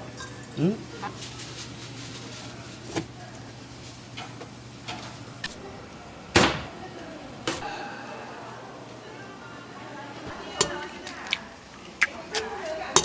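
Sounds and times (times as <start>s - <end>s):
steady background noise: 0.0s - 13.0s.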